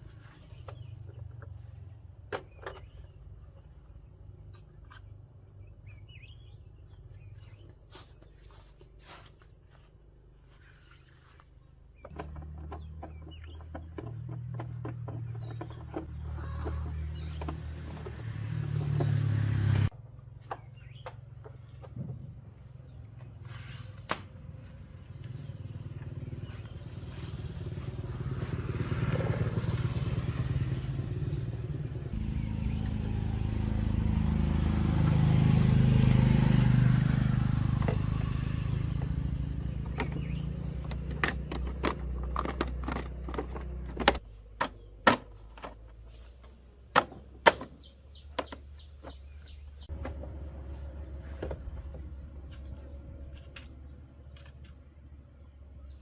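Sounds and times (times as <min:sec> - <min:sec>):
engine humming: 0:00.0 - 0:56.0
sharp clicks and knocks: 0:39.8 - 0:46.0.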